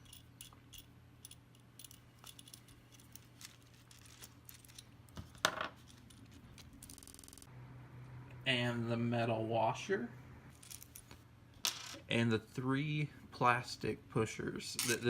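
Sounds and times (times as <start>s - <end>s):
small metal parts clinking: 0.0s - 7.5s, 10.5s - 12.0s, 14.7s - 15.0s.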